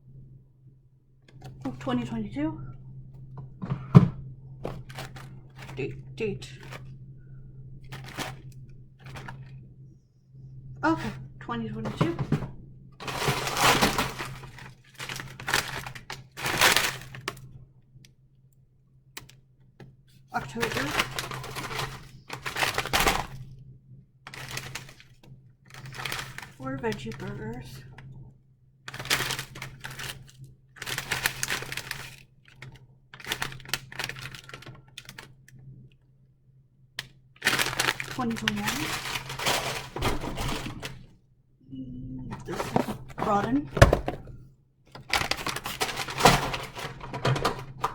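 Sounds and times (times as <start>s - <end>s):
food containers clattering: 3.4s - 5.8s, 6.4s - 6.9s, 7.9s - 8.4s, 9.0s - 9.5s, 10.9s - 17.3s, 20.4s - 23.4s, 24.3s - 25.0s, 25.7s - 27.4s, 28.9s - 30.2s, 30.8s - 32.2s, 37.4s - 41.1s, 42.3s - 47.9s
plastic packages rustling: 4.6s - 6.9s, 7.8s - 9.6s, 10.9s - 17.4s, 20.4s - 23.5s, 24.3s - 27.7s, 28.9s - 35.3s, 37.4s - 41.1s, 42.4s - 47.9s.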